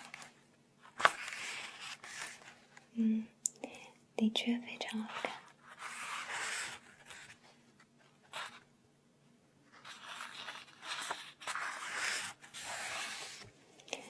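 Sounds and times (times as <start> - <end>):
paper rustling: 0.9 - 2.6, 9.7 - 13.5.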